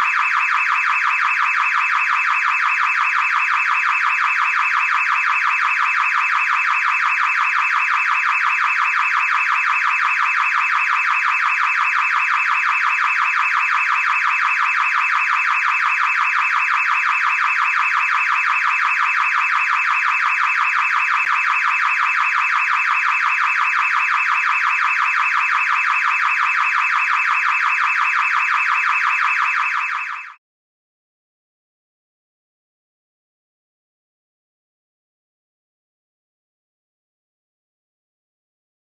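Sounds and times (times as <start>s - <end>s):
car alarm siren: 0.0s - 30.4s.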